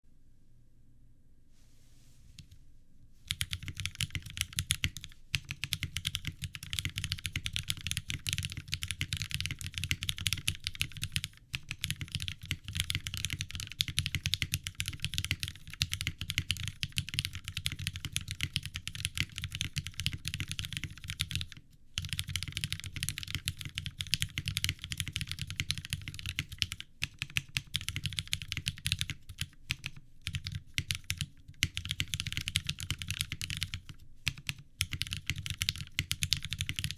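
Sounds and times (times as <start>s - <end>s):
typing on mechanical keyboard: 3.3s - 36.9s.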